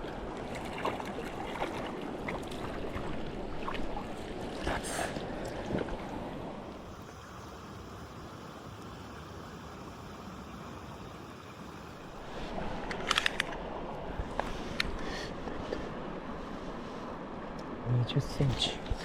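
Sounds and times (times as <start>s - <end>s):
stream water running: 0.0s - 19.0s
small clicks and knocks: 12.9s - 13.6s.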